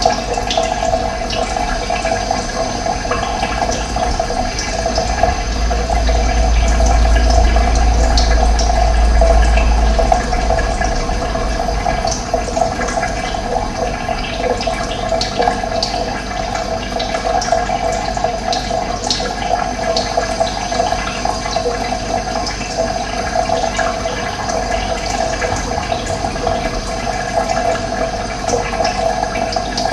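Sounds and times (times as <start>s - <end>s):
deep low rumble: 0.0s - 17.2s, 23.2s - 29.4s
running water rushing: 0.0s - 29.9s.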